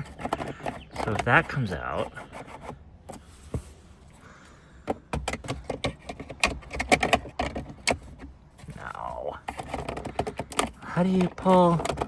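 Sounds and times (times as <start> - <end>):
plastic trim clicking and rattling: 4.8 - 8.3, 9.4 - 12.0.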